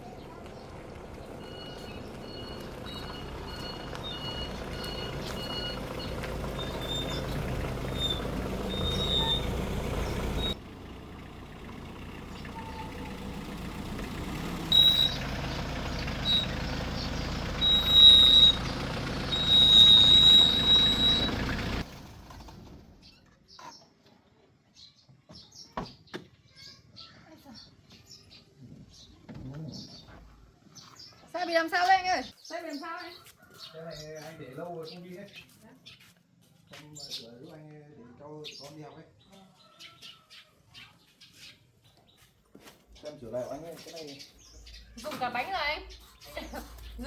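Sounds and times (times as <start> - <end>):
motor vehicle running: 0.0 - 23.6, 44.4 - 47.0
high electronic beeps: 1.4 - 6.1.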